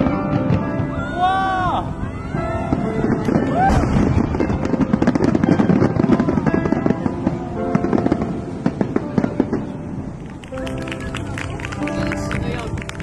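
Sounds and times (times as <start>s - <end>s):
fireworks bursting and crackling: 0.0s - 1.2s, 2.3s - 13.0s
background music: 0.0s - 13.0s.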